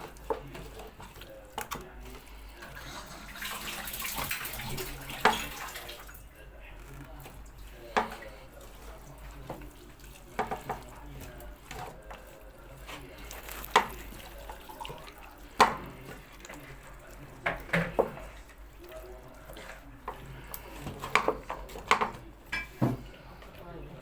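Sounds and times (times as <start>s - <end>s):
tap running into a sink: 3.4s - 6.0s
knocks of things handled in sink: 9.4s - 12.2s, 13.3s - 16.3s, 17.3s - 18.5s, 19.5s - 23.1s.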